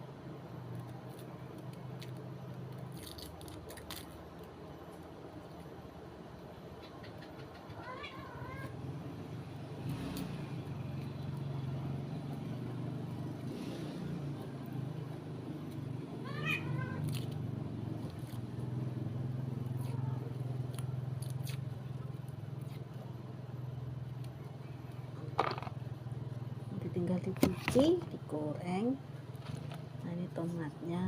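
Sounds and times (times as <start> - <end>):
steady low hum: 0.0 - 31.0
animal wavering cry: 7.7 - 8.8, 16.2 - 17.2.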